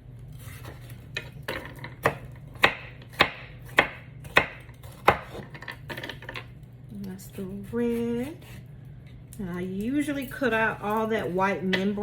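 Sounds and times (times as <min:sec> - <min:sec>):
knife chopping on cutting board: 0:00.3 - 0:06.4.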